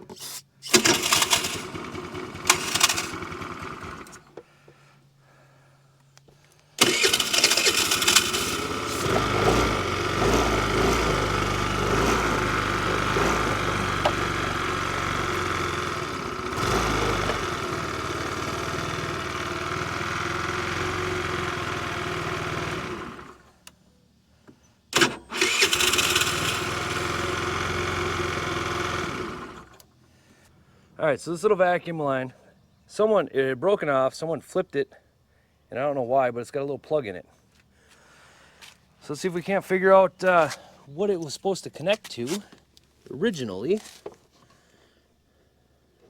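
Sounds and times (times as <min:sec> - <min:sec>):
engine sputter: 0:00.2 - 0:04.3, 0:06.8 - 0:23.7, 0:25.0 - 0:29.9
scooter engine running: 0:00.6 - 0:04.3, 0:06.8 - 0:23.7, 0:25.0 - 0:29.8.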